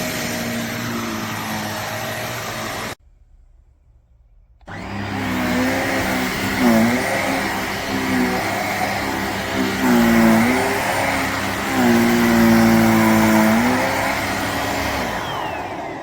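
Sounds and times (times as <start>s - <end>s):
handheld vacuum motor running: 0.0s - 3.0s, 4.7s - 16.0s.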